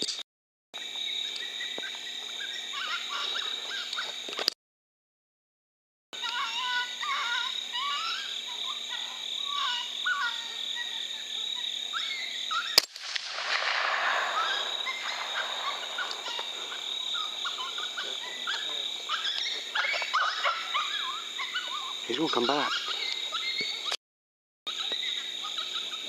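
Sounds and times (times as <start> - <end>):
high gliding animal-like calls: 11.9 - 23.9
hiss: 13.0 - 19.6.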